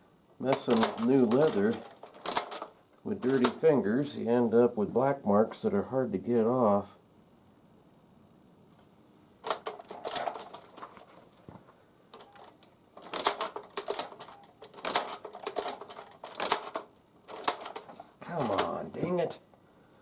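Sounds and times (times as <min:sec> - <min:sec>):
leather sewing machine clicking: 0:00.6 - 0:03.6, 0:09.4 - 0:10.9, 0:12.2 - 0:18.8.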